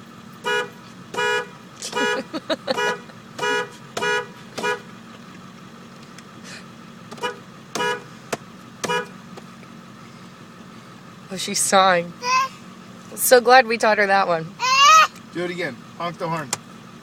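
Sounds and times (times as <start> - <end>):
engine idling hum: 0.0 - 17.0
truck horn honks: 0.4 - 4.9, 7.1 - 8.1, 8.8 - 9.2.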